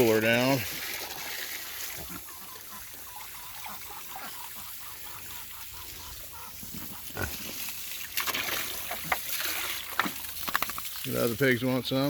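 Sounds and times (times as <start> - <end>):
water hissing from a hose: 0.0 - 2.3, 6.6 - 12.0
ducks quacking: 1.8 - 7.4.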